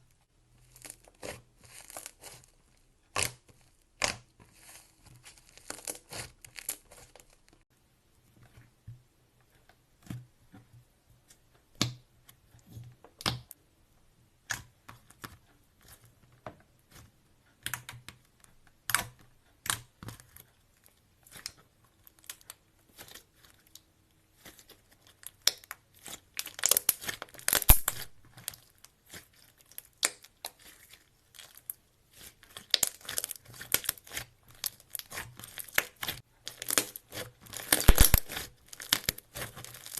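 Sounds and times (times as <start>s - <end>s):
slime sticky clicks and crackles: 18.8s - 23.8s, 24.4s - 39.9s.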